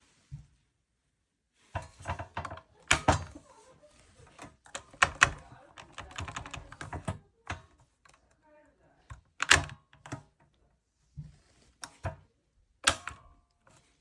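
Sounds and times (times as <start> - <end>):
plastic clicks and knocks: 1.8 - 3.4, 4.2 - 8.2, 9.1 - 10.6.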